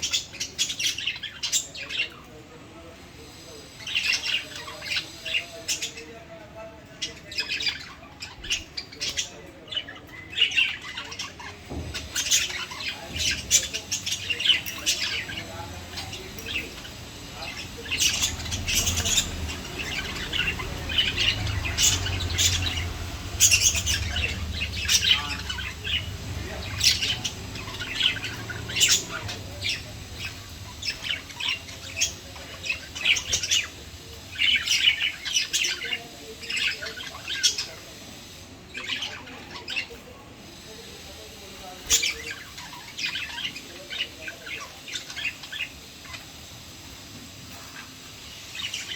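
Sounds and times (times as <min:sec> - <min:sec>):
lovebirds chirping and squawking: 0:00.0 - 0:48.9.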